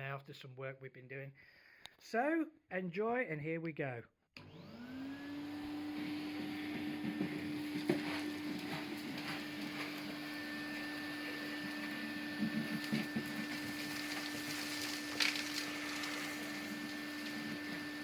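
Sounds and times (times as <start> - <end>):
vacuum cleaner motor whine: 4.4 - 18.0.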